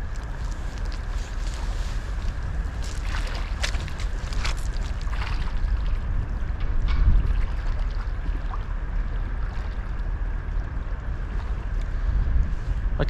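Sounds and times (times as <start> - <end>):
faint clicks and rustles: 0.0 - 7.2
wind buffeting microphone: 0.0 - 13.0.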